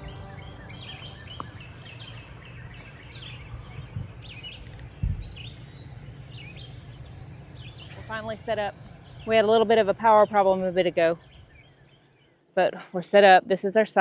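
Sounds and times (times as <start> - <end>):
steady low rumble: 0.0 - 11.8
songbirds chirping: 0.0 - 14.0.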